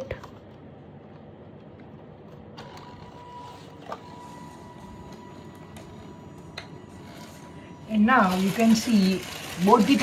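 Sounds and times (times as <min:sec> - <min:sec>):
small electric motors whining: 0:02.6 - 0:10.0.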